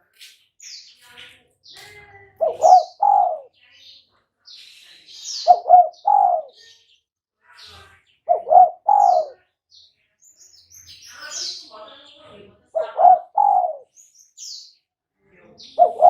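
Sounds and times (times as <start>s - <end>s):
small birds chirping: 0.0s - 16.0s
dove cooing: 2.4s - 3.5s, 5.4s - 6.6s, 8.3s - 9.4s, 12.8s - 13.9s, 15.8s - 16.0s.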